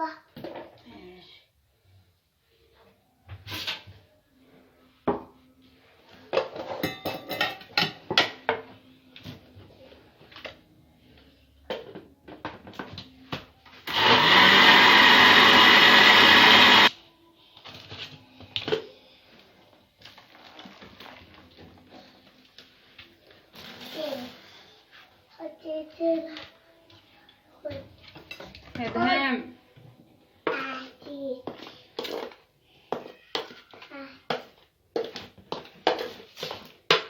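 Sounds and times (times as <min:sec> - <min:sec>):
clatter of bowls and utensils: 0:06.1 - 0:09.4, 0:20.0 - 0:24.5, 0:28.0 - 0:29.0, 0:30.9 - 0:37.0
electric mixer running: 0:13.9 - 0:16.9.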